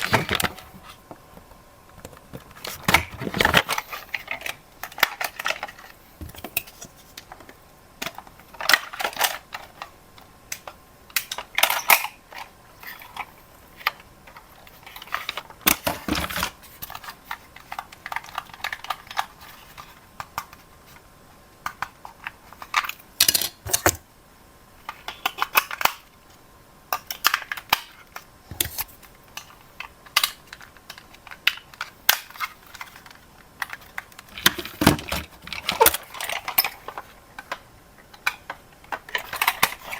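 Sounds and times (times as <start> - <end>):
plastic toy parts rattling: 2.3 - 6.8, 8.0 - 9.9, 10.5 - 20.6, 27.1 - 39.9.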